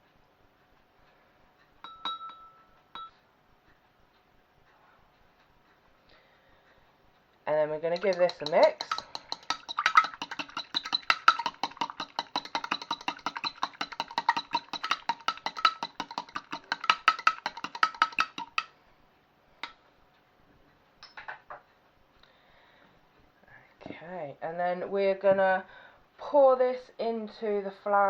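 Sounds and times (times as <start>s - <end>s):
utensil clinking against a jug: 7.9s - 18.7s.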